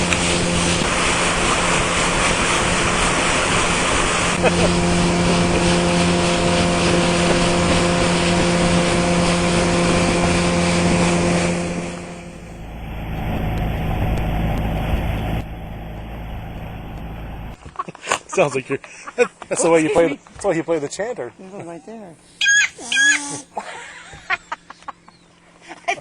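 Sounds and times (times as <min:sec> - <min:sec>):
rushing water: 0:00.0 - 0:16.9
wind noise: 0:00.0 - 0:17.5
motorboat engine running: 0:00.0 - 0:17.6, 0:22.0 - 0:25.9.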